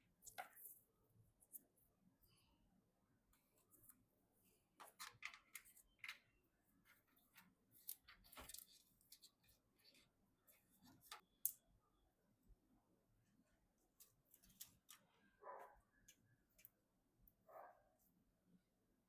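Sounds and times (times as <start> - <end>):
hands handling computer parts: 4.7 - 11.6, 13.7 - 15.1.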